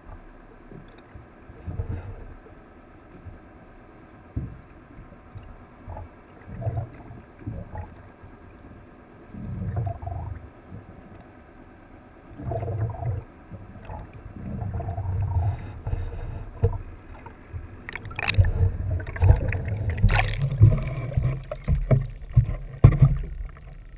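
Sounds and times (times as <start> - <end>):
underwater sloshing and gurgling: 0.0 - 23.9
sharp knocks and clatter: 20.1 - 23.8.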